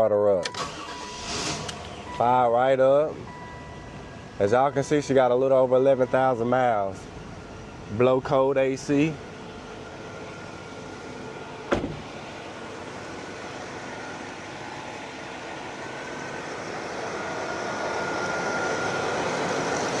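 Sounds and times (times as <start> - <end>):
car air conditioning blower rushing: 8.7 - 20.0.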